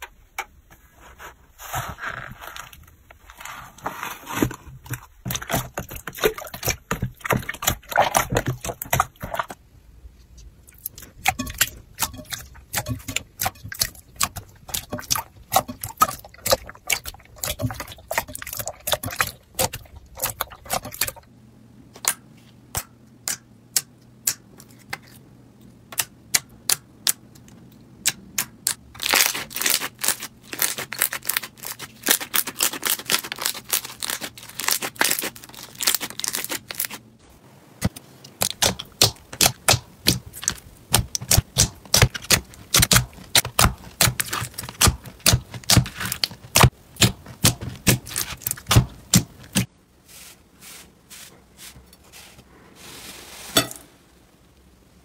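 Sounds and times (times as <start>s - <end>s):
hands squeezing slime: 29.0s - 37.0s.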